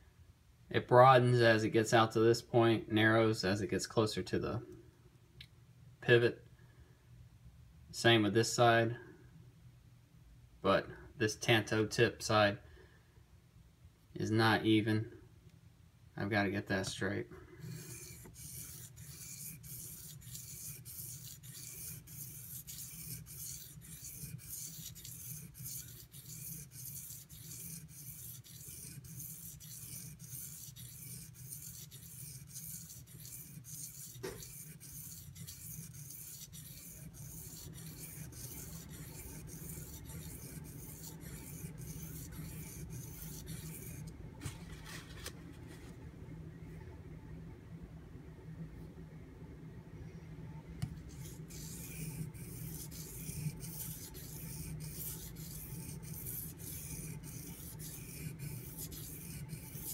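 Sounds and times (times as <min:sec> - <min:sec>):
knife rasping on whetstone: 0:17.6 - 0:44.1, 0:51.1 - 0:59.9.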